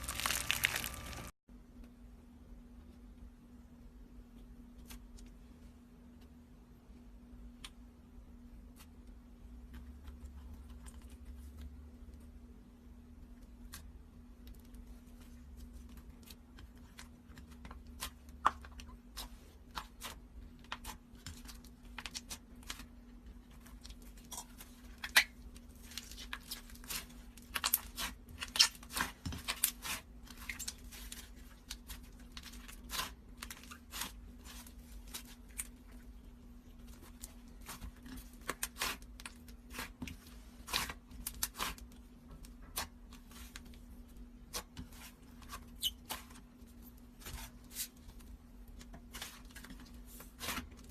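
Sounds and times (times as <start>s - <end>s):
slime popping and crackling: 0.0s - 1.3s.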